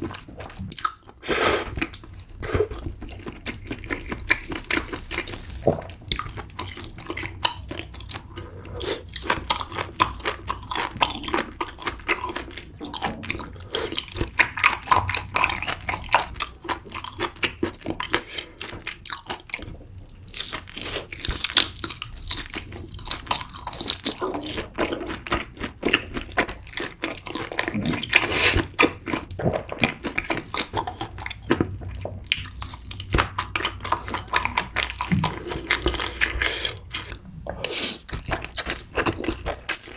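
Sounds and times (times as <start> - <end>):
chewing and wet mouth sounds: 0.0 - 39.9.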